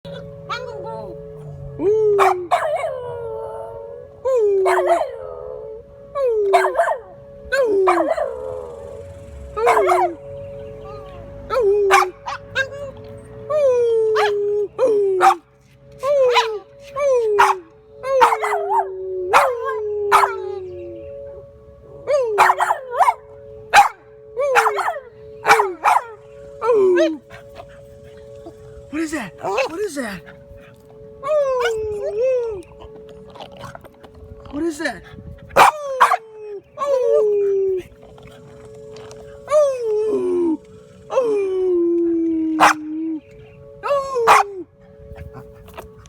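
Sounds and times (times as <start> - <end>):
two-note emergency siren: 0.0 - 46.0
dog howling: 0.1 - 10.2, 11.5 - 15.4, 16.0 - 20.9, 22.1 - 23.2, 23.8 - 28.6, 31.2 - 33.9, 35.6 - 43.2, 43.8 - 44.7.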